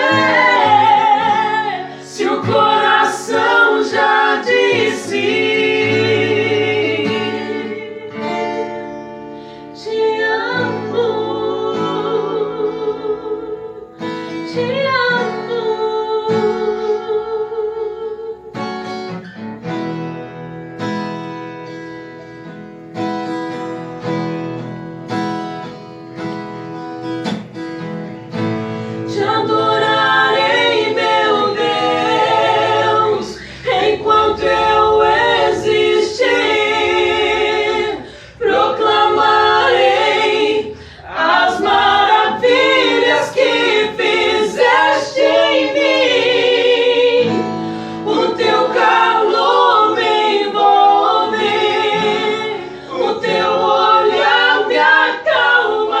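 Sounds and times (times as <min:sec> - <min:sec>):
acoustic guitar: 0:00.0 - 0:56.0.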